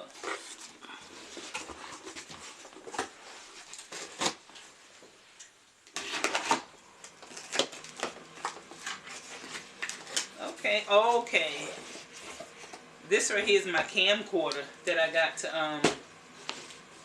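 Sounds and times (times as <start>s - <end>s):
packaging rustling: 0.0s - 4.8s, 5.9s - 12.8s.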